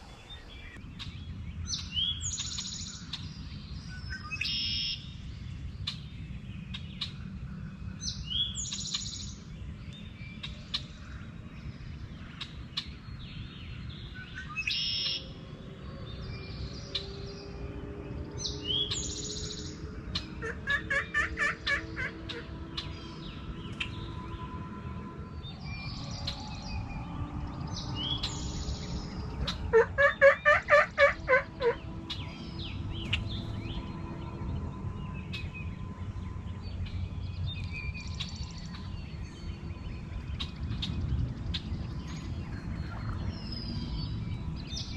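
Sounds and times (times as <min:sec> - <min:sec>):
songbirds chirping: 0:00.0 - 0:44.9
turkey yelps: 0:20.4 - 0:22.4, 0:29.4 - 0:31.8.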